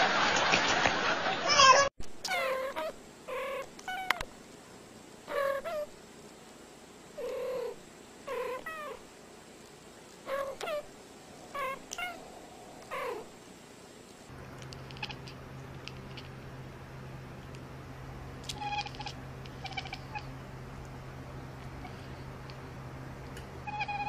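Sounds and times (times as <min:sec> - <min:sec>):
cat meowing: 0:01.5 - 0:04.2, 0:10.3 - 0:13.3, 0:18.5 - 0:20.3, 0:23.7 - 0:24.0
steady low hum: 0:02.4 - 0:24.0.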